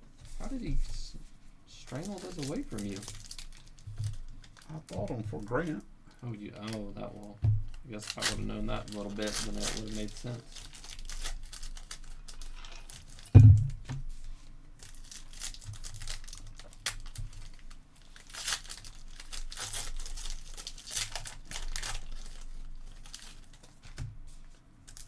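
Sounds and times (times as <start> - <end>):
wrappers tearing and crinkling: 1.7 - 5.8, 6.4 - 13.4, 14.7 - 25.0
low thump: 13.4 - 14.0.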